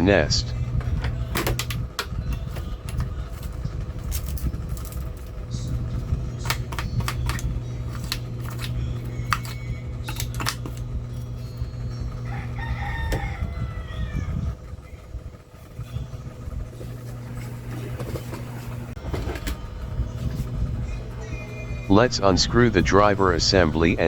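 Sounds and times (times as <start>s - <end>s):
steady low hum: 0.0s - 24.0s
sharp clicks and wrapper crinkles: 6.5s - 10.8s.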